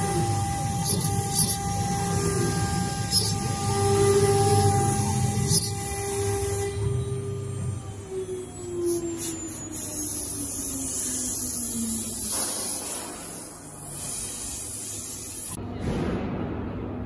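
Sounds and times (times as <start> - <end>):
spindle motor winding down: 0.0 - 13.6.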